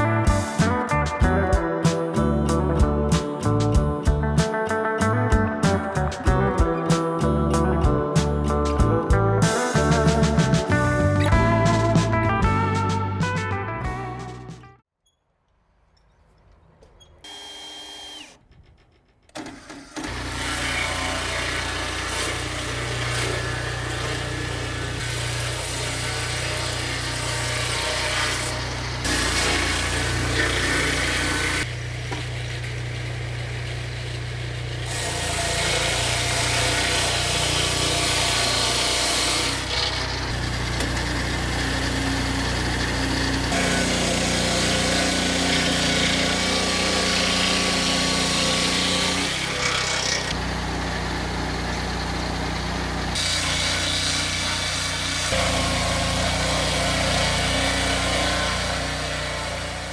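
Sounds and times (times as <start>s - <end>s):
low motor hum: 0.0s - 12.6s, 38.2s - 59.9s
woodworking machine cutting: 17.3s - 18.4s, 19.3s - 59.9s.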